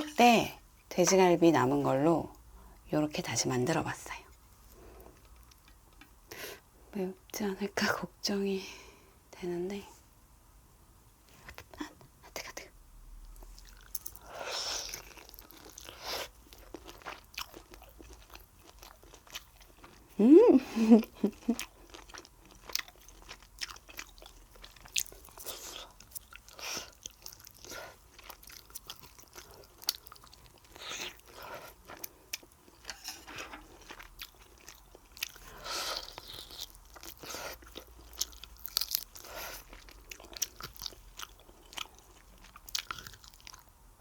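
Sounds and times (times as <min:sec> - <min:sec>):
person chewing food: 0:13.3 - 0:20.2, 0:20.9 - 0:43.7.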